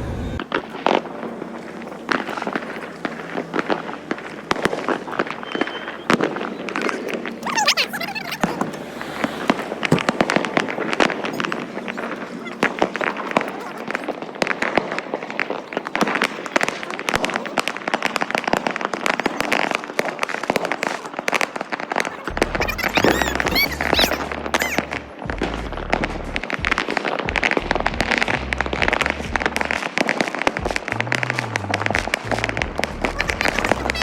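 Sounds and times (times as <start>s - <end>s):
firecrackers crackling: 0.0s - 34.0s
rising firework whistles: 0.0s - 34.0s
music with deep bass: 22.3s - 34.0s.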